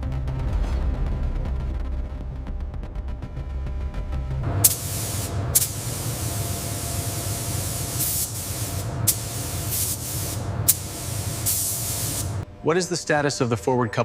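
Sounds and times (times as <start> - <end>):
low rumble: 0.0 - 14.0
spraying hisses: 4.6 - 12.4
steady hissing: 4.6 - 13.8.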